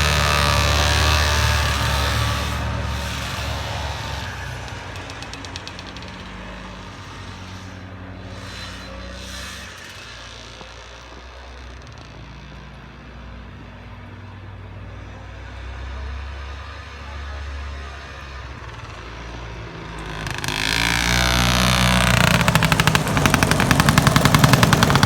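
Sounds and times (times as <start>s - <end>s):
snowmobile engine running: 0.0s - 7.3s, 17.1s - 25.0s.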